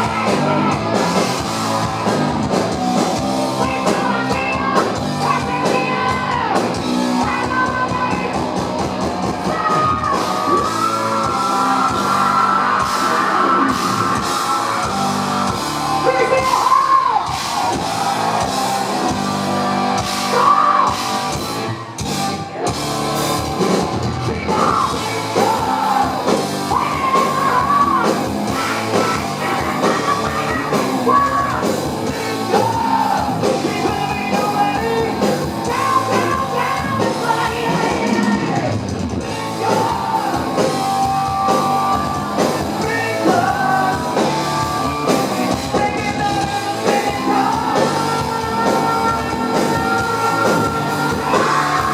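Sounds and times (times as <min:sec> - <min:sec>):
heavy metal band playing: 0:00.0 - 0:51.9
man yelling vocals: 0:15.9 - 0:17.3, 0:20.2 - 0:21.0, 0:24.3 - 0:44.2, 0:45.7 - 0:51.9.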